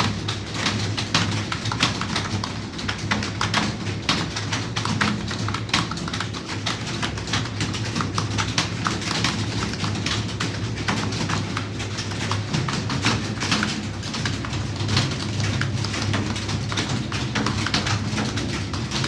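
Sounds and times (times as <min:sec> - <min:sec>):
computer keyboard typing: 0:00.0 - 0:19.0.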